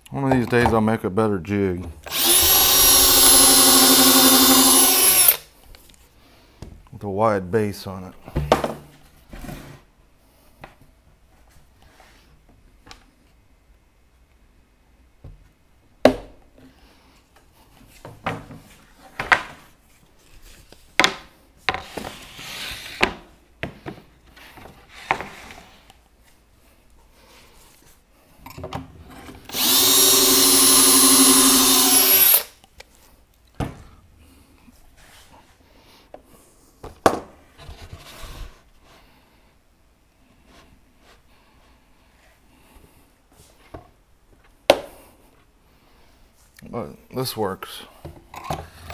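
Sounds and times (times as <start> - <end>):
drill boring into plywood: 2.0 - 5.4, 29.5 - 32.5.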